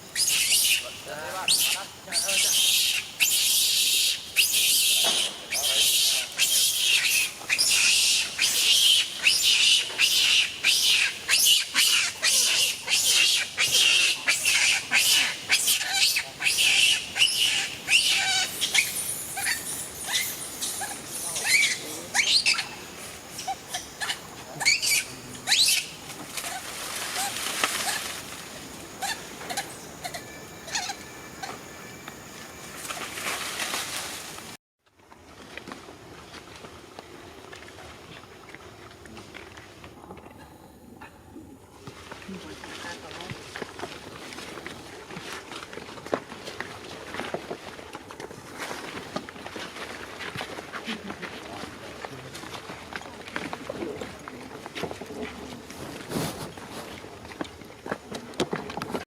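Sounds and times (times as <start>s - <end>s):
steady outdoor hiss: 0.0s - 59.0s
monkey screeching: 0.1s - 28.2s, 29.0s - 31.6s.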